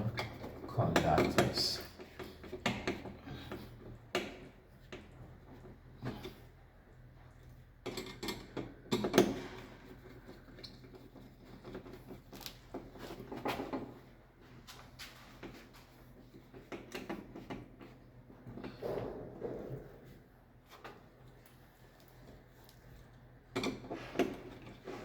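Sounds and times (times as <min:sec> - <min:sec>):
hand tools clicking and knocking: 0:00.0 - 0:06.4.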